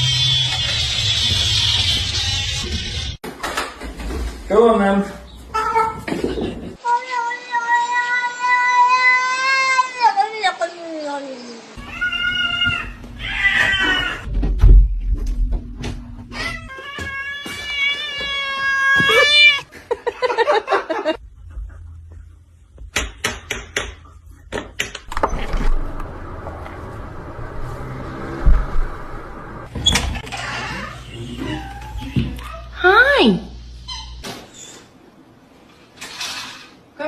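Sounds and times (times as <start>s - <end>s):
cat meowing loudly: 6.9s - 10.1s, 11.8s - 14.3s, 16.4s - 19.7s.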